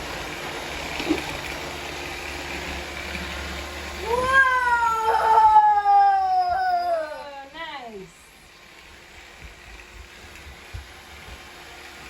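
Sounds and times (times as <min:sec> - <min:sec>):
robot vacuums humming: 0:00.0 - 0:12.0.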